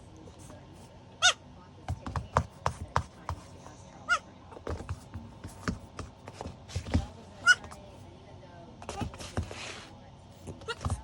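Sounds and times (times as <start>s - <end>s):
rustling and tapping: 4.6s - 7.8s.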